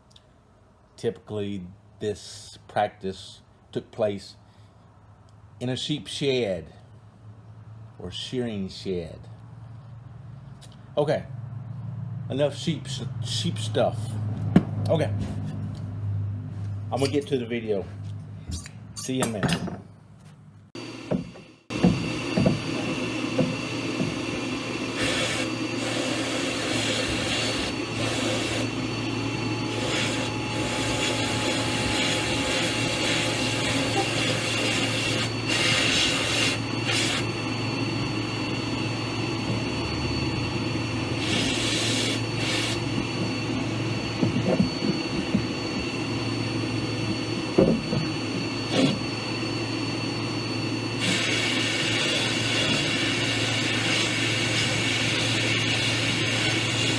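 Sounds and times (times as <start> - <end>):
power tool motor running: 20.8 - 56.9.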